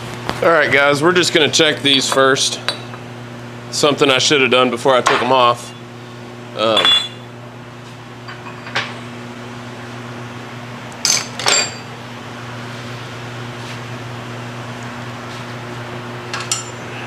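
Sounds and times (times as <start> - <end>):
steady machine hum: 0.0 - 17.0
metal tools handled on metal bench: 11.0 - 11.9, 16.3 - 16.8.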